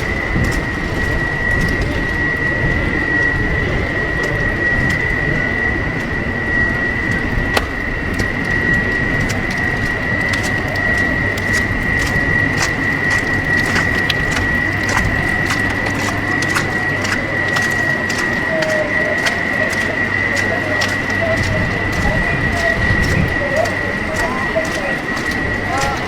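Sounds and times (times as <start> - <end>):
falling wet snow rushing: 7.1 - 17.3.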